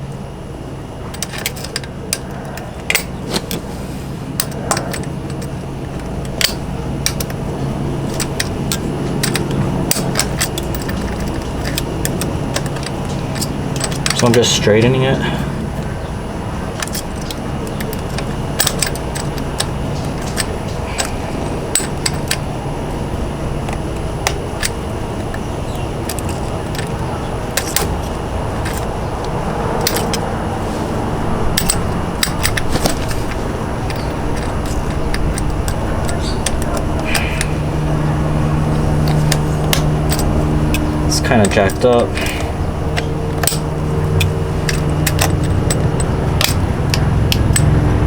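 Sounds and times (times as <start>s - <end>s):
steady low hum: 0.0s - 48.0s
pliers clicking on metal pin: 16.8s - 22.4s, 39.0s - 47.7s.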